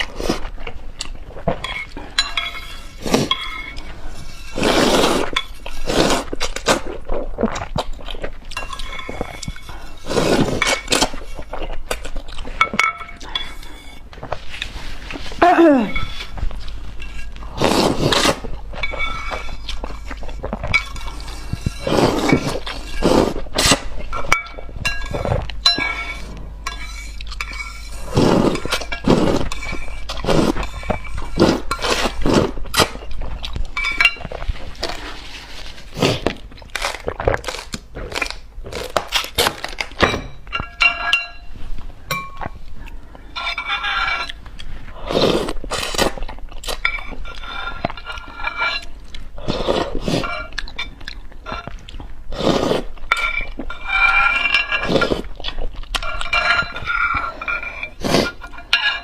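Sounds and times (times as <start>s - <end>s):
utensils clinking against dishes: 1.6s - 6.8s, 8.5s - 14.6s, 15.2s - 35.0s, 39.1s - 42.6s, 43.3s - 44.4s, 45.8s - 51.8s, 53.1s - 59.0s
chewing: 44.3s - 58.7s.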